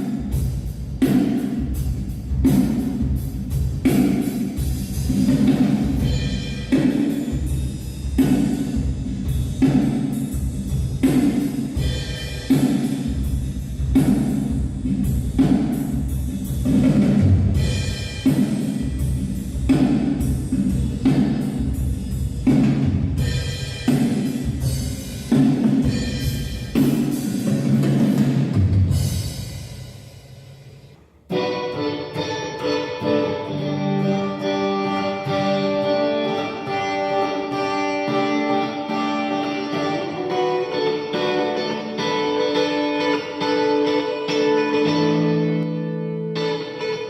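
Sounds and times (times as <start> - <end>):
bass: 0.0 - 29.7
drum kit steady beat: 0.0 - 31.0.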